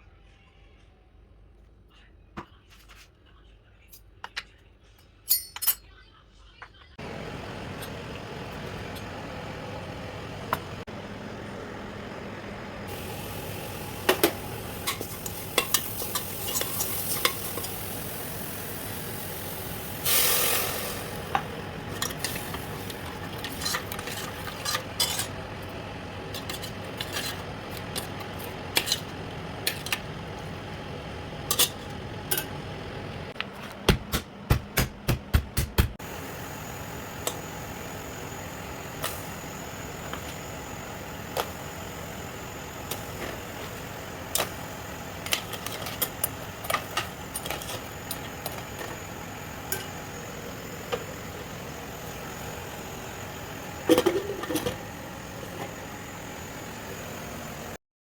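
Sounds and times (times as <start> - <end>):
food sizzling in a pan: 12.8 - 31.5
loud hiss: 17.0 - 21.3
metal spoon scraping a pot: 23.0 - 25.4, 26.3 - 30.0.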